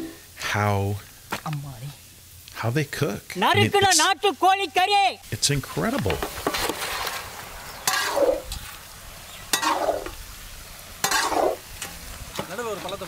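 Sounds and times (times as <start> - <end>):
food sizzling: 0.0 - 13.0
spoon scraping cooking pot: 9.5 - 10.2, 11.0 - 11.6.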